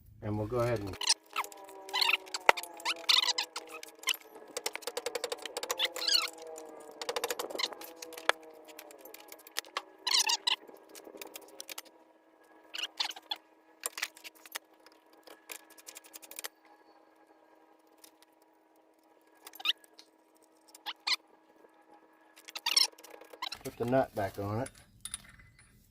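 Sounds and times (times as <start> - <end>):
light metal clinks: 24.5 - 25.9.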